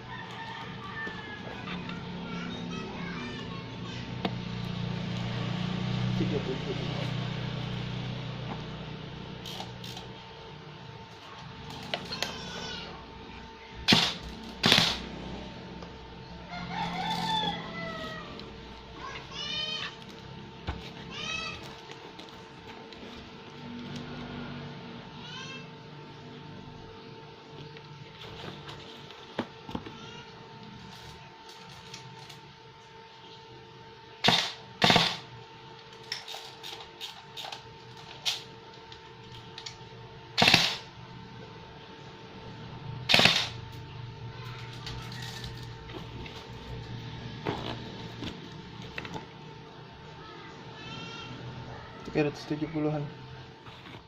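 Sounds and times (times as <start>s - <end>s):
rooster crowing: 0.0s - 2.4s, 16.3s - 18.6s
airsoft gun sharp shots: 13.9s - 15.0s, 34.2s - 35.2s, 40.4s - 40.9s, 43.1s - 43.6s.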